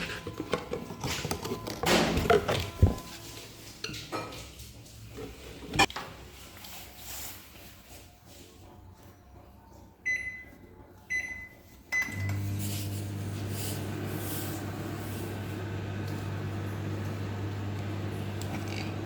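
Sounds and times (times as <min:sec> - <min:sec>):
keypad beeps: 0:10.0 - 0:10.5, 0:11.1 - 0:12.4
microwave oven humming: 0:12.0 - 0:19.0.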